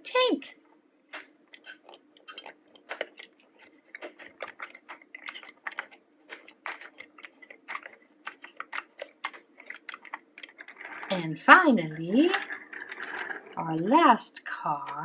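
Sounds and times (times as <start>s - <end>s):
plastic toy parts clicking: 1.1s - 11.1s, 11.8s - 13.6s.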